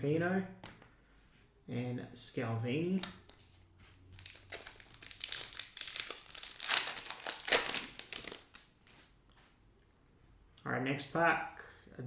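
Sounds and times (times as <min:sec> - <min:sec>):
foil wrapper crinkling: 0:04.2 - 0:09.1.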